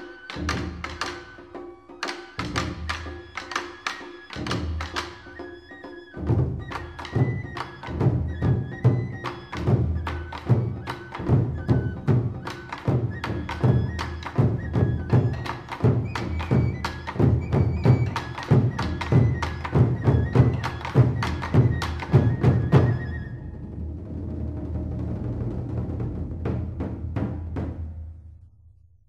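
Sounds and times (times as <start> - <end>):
fast drum beat: 9.0 - 23.1.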